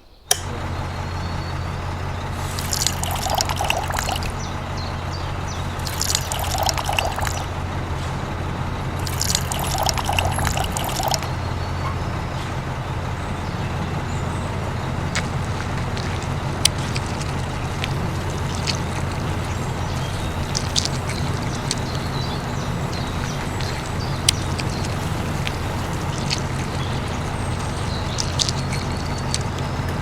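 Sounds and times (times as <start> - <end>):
liquid pouring and splashing: 2.4 - 4.5, 5.6 - 7.5, 9.0 - 11.4, 14.8 - 30.0.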